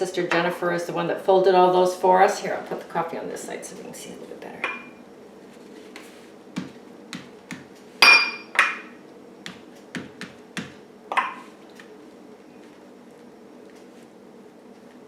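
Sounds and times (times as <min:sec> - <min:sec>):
ceramic cup clinking on table: 0:08.0 - 0:08.8.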